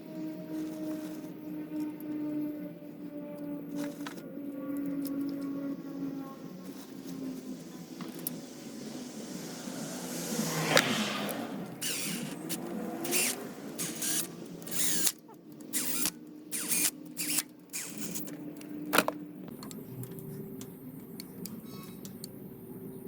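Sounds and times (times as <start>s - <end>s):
hand tool strokes: 6.6s - 18.4s
faint tool clicks: 10.7s - 18.7s.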